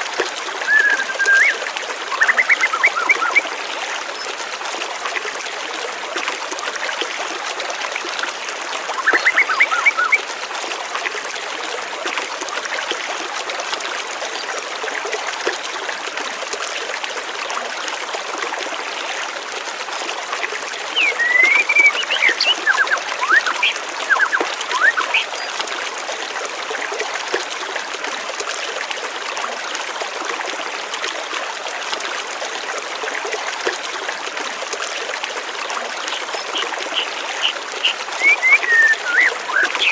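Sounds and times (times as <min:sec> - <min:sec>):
stream water flowing: 0:00.0 - 0:39.9
birds chirping: 0:20.9 - 0:25.5, 0:36.1 - 0:39.9.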